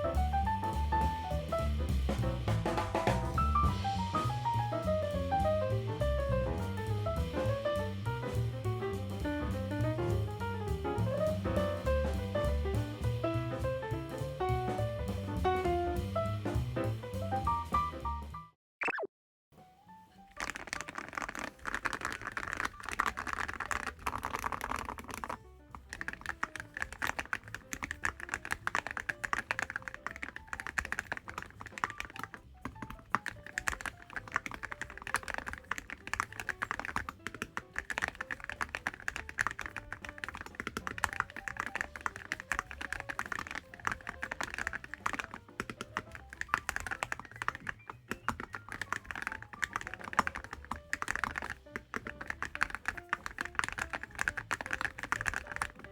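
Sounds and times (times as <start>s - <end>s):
background music: 20.0s - 55.9s
mechanical keyboard typing: 20.4s - 55.9s.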